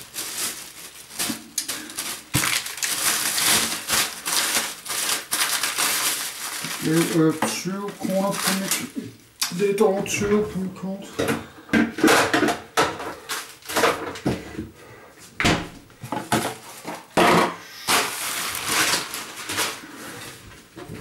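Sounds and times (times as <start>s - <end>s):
rustling: 0.0s - 9.2s, 17.8s - 21.0s.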